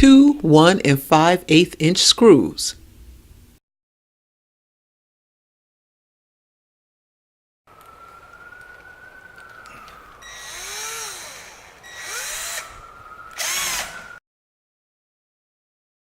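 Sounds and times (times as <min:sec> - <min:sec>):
power drill driving screws: 0:10.2 - 0:14.1.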